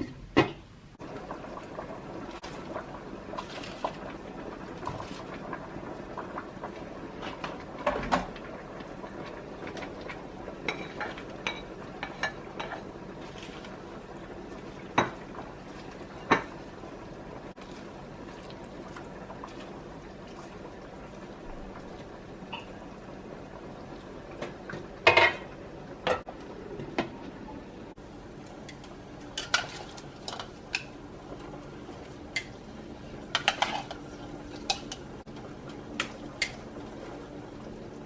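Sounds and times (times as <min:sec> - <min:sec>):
cookware and utensils clinking: 0:10.6 - 0:13.6, 0:16.1 - 0:16.6, 0:24.8 - 0:26.3, 0:28.7 - 0:30.9, 0:33.2 - 0:35.0.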